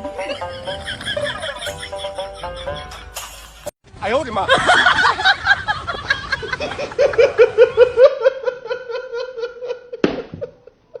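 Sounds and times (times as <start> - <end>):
high-pitched laughter: 0.0 - 3.7.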